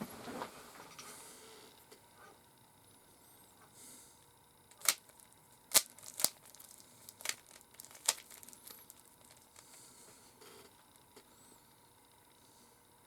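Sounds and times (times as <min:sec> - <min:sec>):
puzzle cube plastic clicks: 0:04.7 - 0:09.7.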